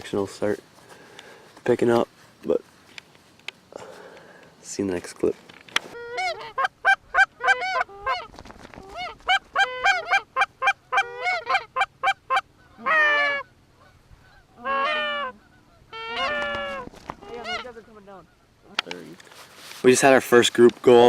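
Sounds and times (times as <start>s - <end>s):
goose honking: 6.0s - 19.0s.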